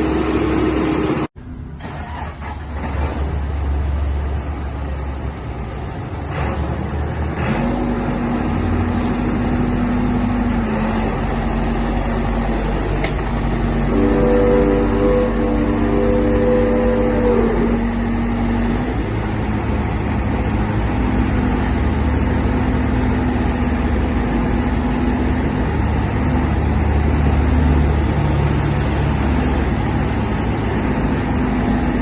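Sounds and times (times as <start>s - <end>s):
diesel engine running: 0.0s - 32.0s
steady whine: 9.8s - 32.0s
higher steady tones: 13.6s - 18.9s.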